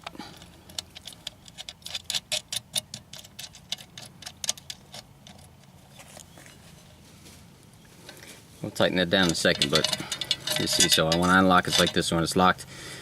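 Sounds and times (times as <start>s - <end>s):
small metallic ticks and clicks: 0.0s - 5.8s, 9.1s - 12.4s.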